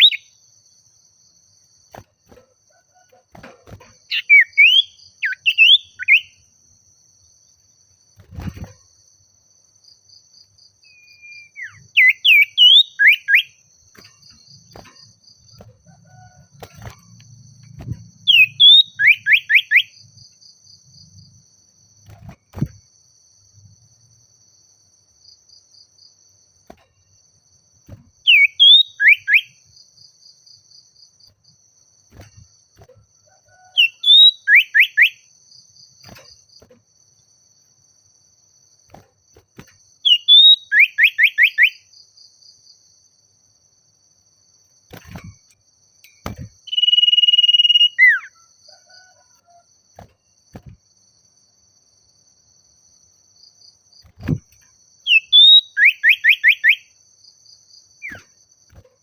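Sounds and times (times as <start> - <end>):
insects trilling: 0.0 - 59.0
bird calling whistles: 10.9 - 13.5, 18.3 - 19.9, 28.3 - 29.5, 33.8 - 35.2, 40.1 - 41.8, 46.7 - 48.3, 55.1 - 56.9.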